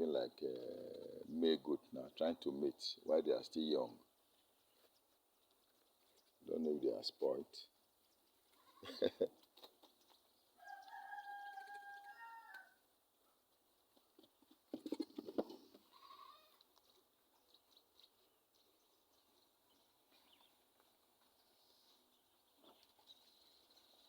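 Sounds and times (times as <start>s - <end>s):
goat bleating: 15.7s - 16.6s.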